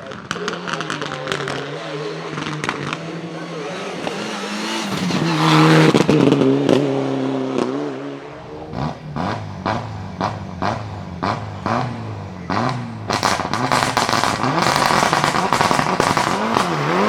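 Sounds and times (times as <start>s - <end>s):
car engine running hard: 0.0s - 17.0s
exhaust pops and bangs: 12.7s - 16.8s.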